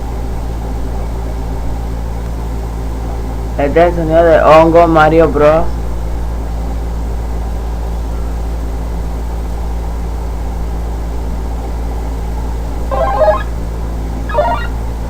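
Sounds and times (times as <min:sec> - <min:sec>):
low electrical hum: 0:11.4 - 0:15.0
short pitched blips: 0:12.9 - 0:13.5, 0:14.3 - 0:14.8.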